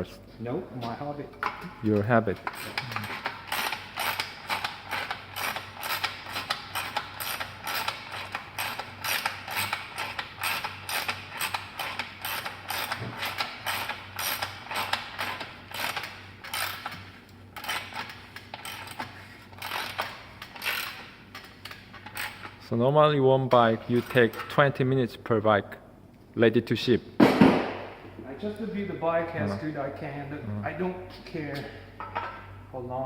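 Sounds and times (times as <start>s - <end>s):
ratchet wrench clicking: 2.4s - 17.0s, 17.6s - 22.5s.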